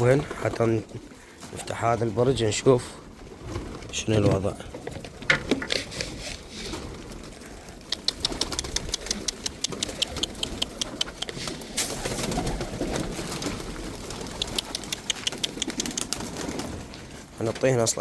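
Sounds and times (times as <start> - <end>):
pigeons cooing: 5.8 - 17.1.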